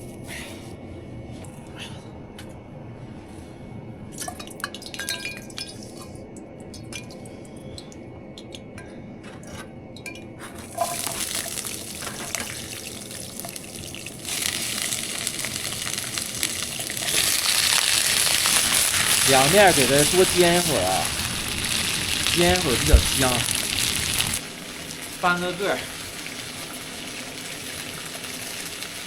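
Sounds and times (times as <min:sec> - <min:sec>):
cooking utensils clinking: 0:10.5 - 0:12.8
food sizzling in hot oil: 0:10.6 - 0:29.0.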